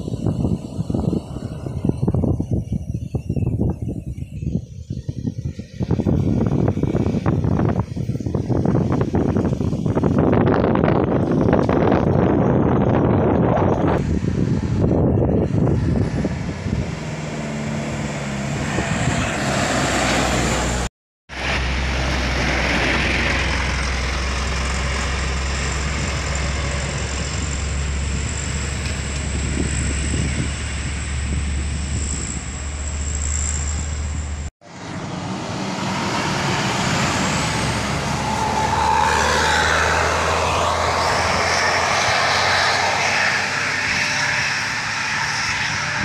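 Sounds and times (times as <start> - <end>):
heavy vehicles driving past: 0.0 - 2.9, 14.0 - 46.0
tyre noise on road: 0.0 - 46.0.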